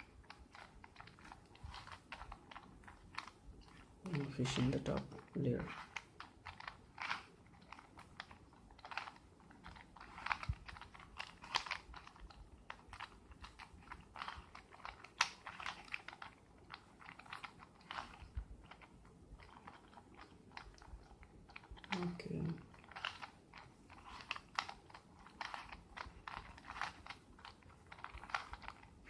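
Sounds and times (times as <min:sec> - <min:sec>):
puzzle cube layers clicking: 0:00.0 - 0:29.0.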